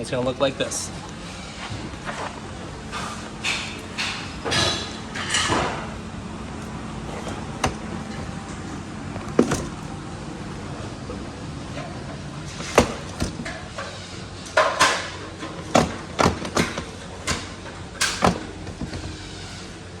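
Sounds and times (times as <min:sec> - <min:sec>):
chair seat clicking and knocking: 0:06.6 - 0:08.3, 0:09.2 - 0:09.9, 0:12.6 - 0:13.6, 0:15.6 - 0:19.2.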